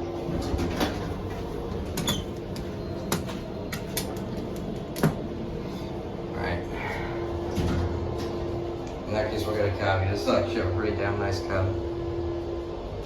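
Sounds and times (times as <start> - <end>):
elevator doors opening: 0.0 - 6.4, 7.2 - 10.7
steady hum: 0.0 - 13.0.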